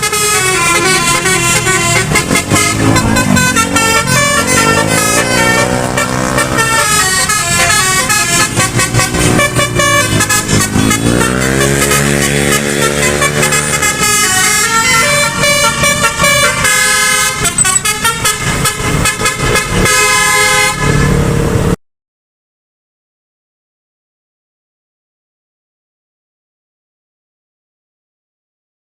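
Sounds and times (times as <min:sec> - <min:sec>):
multi-tone bus horn melody: 0:00.0 - 0:21.8.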